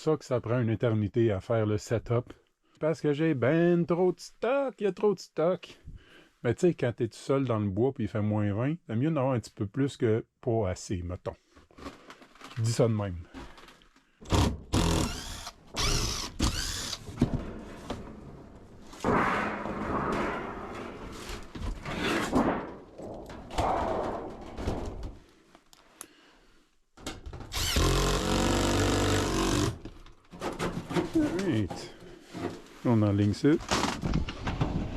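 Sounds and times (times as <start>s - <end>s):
cordless drill running: 14.3s - 17.1s, 27.5s - 29.8s.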